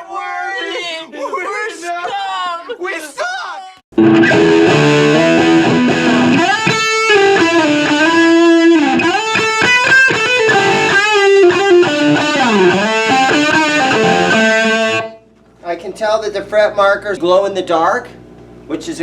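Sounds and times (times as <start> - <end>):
electric guitar lead with pitch dives: 4.0 - 15.3.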